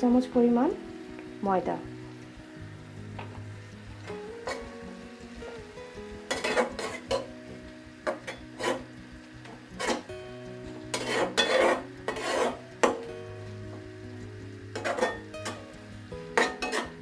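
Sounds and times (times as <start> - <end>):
spatula scraping a pan: 4.4 - 4.7, 6.3 - 7.3, 8.0 - 10.1, 10.7 - 13.0, 14.7 - 15.7, 16.3 - 17.0.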